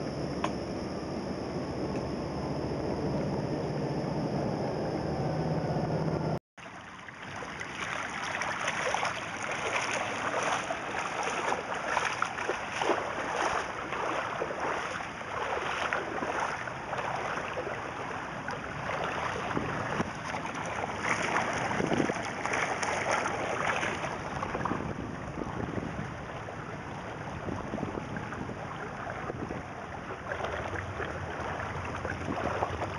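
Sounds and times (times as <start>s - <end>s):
wading through sloshing water: 6.6s - 32.9s.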